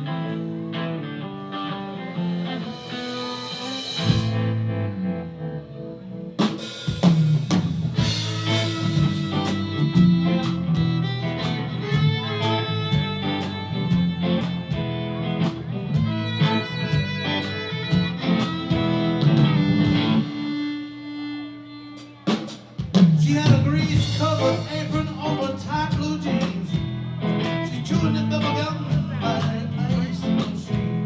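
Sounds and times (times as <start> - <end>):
bass guitar: 0.0 - 31.0
electric guitar: 0.0 - 31.0
drum kit: 1.4 - 5.4, 6.2 - 20.7, 22.0 - 31.0.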